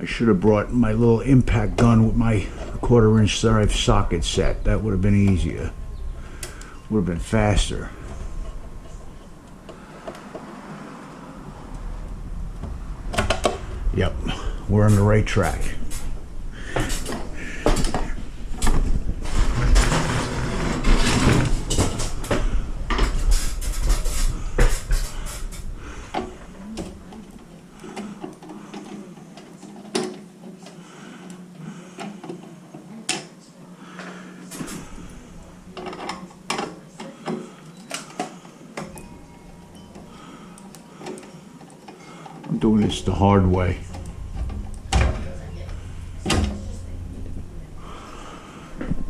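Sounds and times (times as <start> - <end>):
faint steady hum: 0.0 - 49.0
sheet metal handling rumble: 12.0 - 28.2, 42.2 - 49.0.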